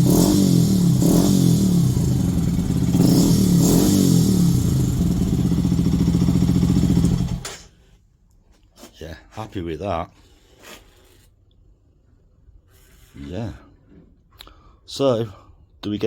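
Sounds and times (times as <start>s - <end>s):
motorcycle engine idling: 0.0s - 7.6s
motorcycle throttle blips: 0.0s - 7.6s.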